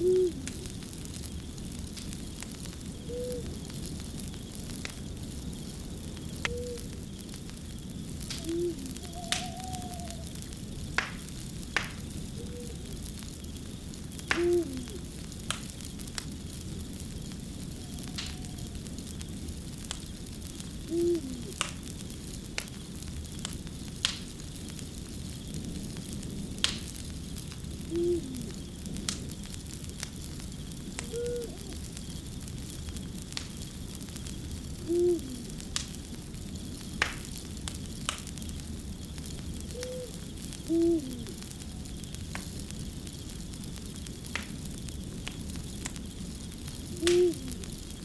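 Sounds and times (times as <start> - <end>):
owl hooting: 0.0 - 0.5, 3.0 - 3.5, 6.5 - 6.9, 8.4 - 10.4, 12.4 - 13.0, 14.3 - 15.1, 17.8 - 18.8, 20.8 - 21.6, 27.9 - 28.5, 31.0 - 31.8, 34.8 - 35.5, 39.7 - 41.9, 46.9 - 47.7
steady low rumble: 0.0 - 48.0
wood fire crackling: 0.0 - 48.0.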